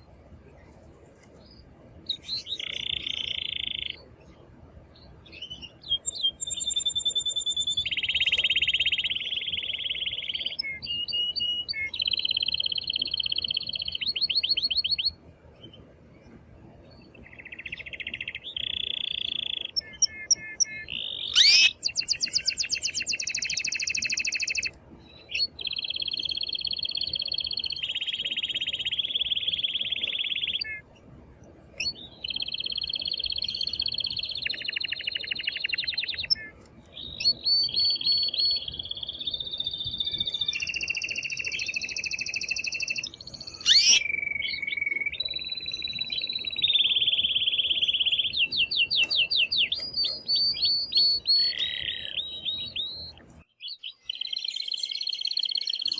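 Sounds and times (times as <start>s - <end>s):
canary singing rolling trills: 1.4s - 15.9s, 16.9s - 55.9s.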